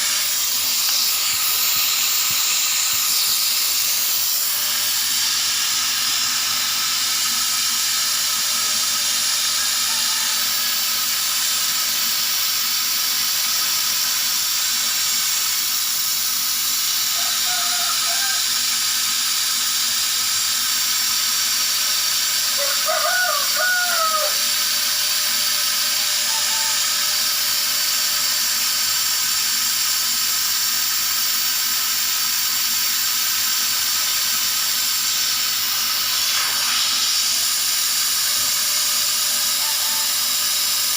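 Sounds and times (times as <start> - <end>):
laser cutter hissing: 0.0 - 40.9
rooster crowing: 9.5 - 11.1, 17.1 - 18.7, 22.5 - 27.6, 39.4 - 40.5.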